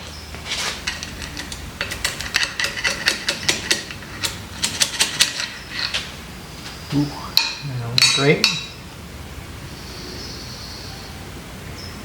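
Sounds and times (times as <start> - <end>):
steel parts clicking and clinking: 0.7 - 6.1.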